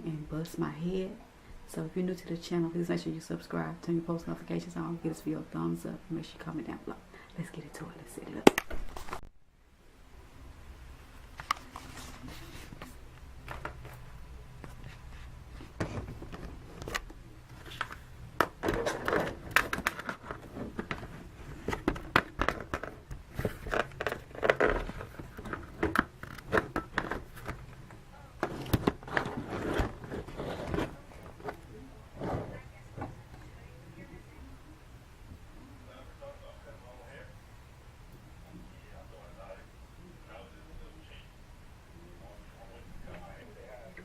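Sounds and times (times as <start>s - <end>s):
rustling and scraping: 8.8s - 9.3s, 11.2s - 33.3s.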